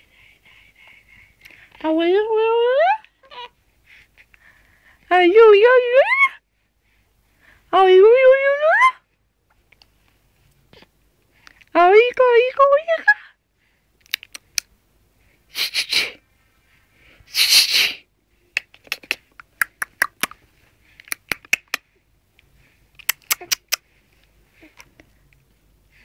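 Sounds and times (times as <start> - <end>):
baby lip smacks: 14.0 - 14.7, 18.6 - 21.8, 23.0 - 23.9
tongue clicks: 14.0 - 14.7, 18.6 - 20.4, 21.0 - 21.8, 23.0 - 23.9.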